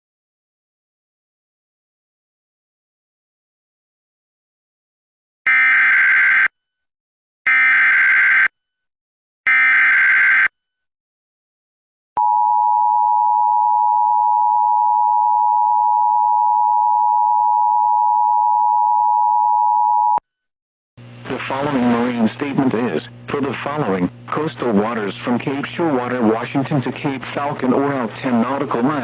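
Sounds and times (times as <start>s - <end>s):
steady attention tone: 12.2s - 20.2s.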